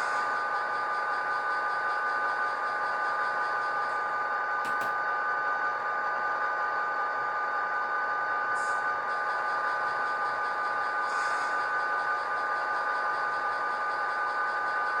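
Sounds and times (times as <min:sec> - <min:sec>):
diesel locomotive engine drone: 0:00.0 - 0:15.0.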